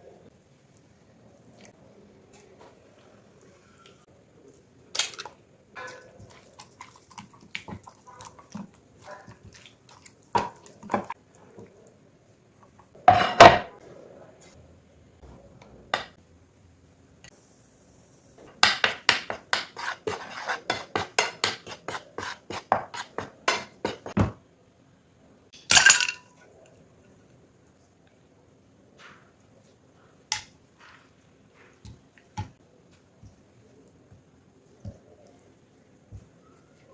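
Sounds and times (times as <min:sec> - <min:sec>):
loud clatter of dishes: 0:13.1 - 0:13.8.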